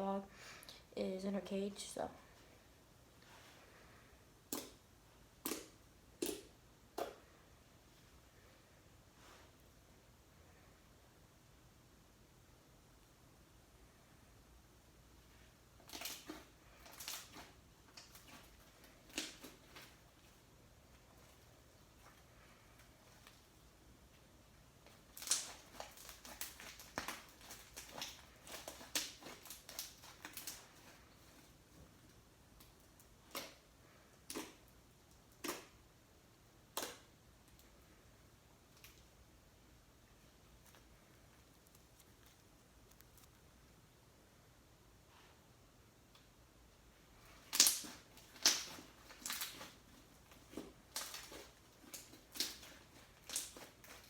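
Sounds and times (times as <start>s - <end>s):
slime squelching and popping: 4.4s - 7.2s, 15.6s - 23.6s, 24.8s - 31.4s, 32.5s - 35.9s, 36.6s - 37.7s, 47.2s - 54.0s
slime clicking and popping: 4.5s - 4.8s, 5.4s - 7.2s, 25.1s - 30.6s, 47.4s - 54.0s.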